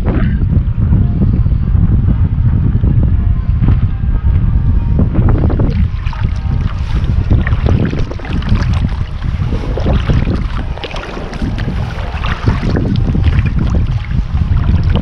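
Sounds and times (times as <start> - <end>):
choppy water against hull: 0.0 - 15.0
wind buffeting microphone: 0.0 - 15.0
kayak paddle splashing: 5.2 - 15.0.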